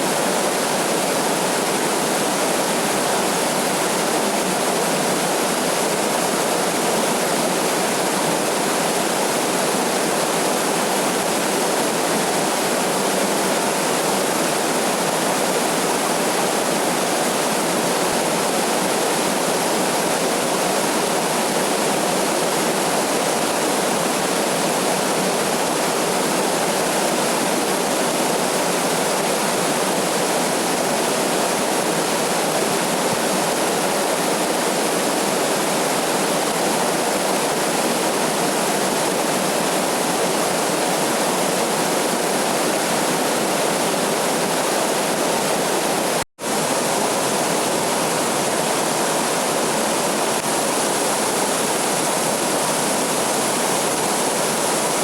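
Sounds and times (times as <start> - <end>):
waterfall rushing: 29.9 - 55.0.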